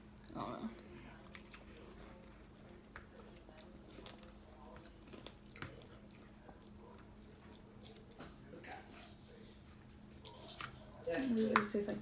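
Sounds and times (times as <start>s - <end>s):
person chewing berries: 0.0s - 8.2s
low steady hum: 0.0s - 12.0s.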